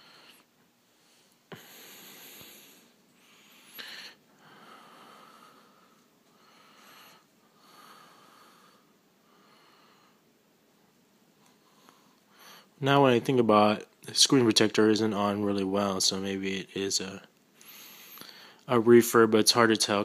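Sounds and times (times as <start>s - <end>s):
faint slow breathing: 0.0s - 10.3s, 11.4s - 12.8s, 17.6s - 18.7s.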